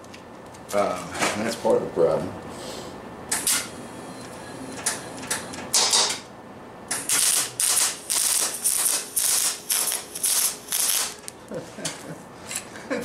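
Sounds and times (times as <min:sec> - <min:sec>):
welder arc crackling: 0:06.9 - 0:11.4.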